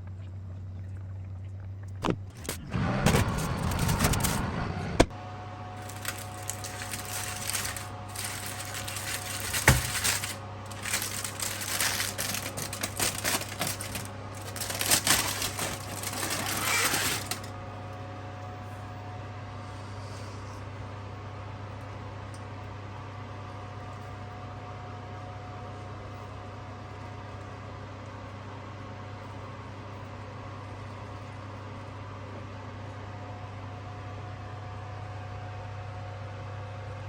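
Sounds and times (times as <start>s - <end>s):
steady low hum: 0.0s - 24.3s
clattering and rustling of handled objects: 2.1s - 4.4s, 5.8s - 17.5s.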